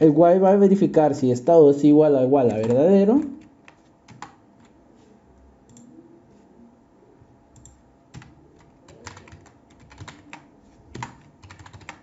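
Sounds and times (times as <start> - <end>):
keyboard keystrokes: 2.5 - 4.8, 7.6 - 12.0.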